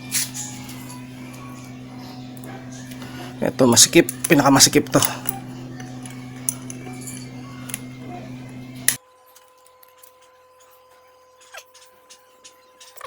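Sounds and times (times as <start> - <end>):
steady low hum: 0.0 - 9.0.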